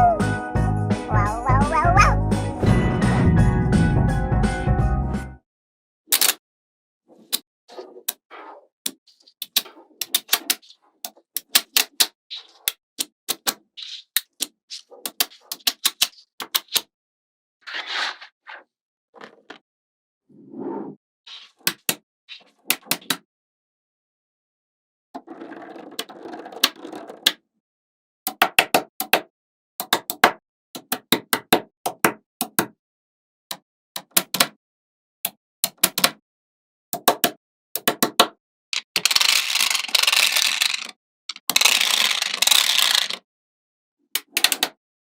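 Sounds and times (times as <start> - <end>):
magnetic balls rattling: 38.8 - 43.2.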